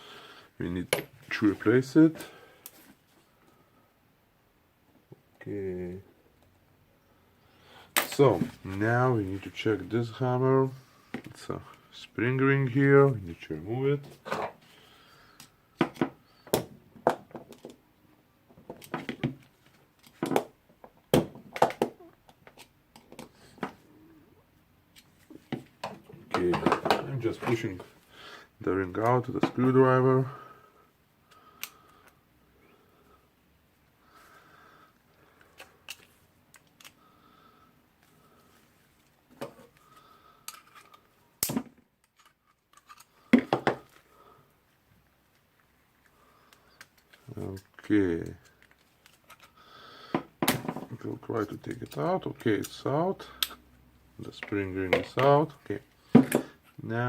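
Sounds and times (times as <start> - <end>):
screwdriver clicking and scraping metal: 42.0 - 43.1.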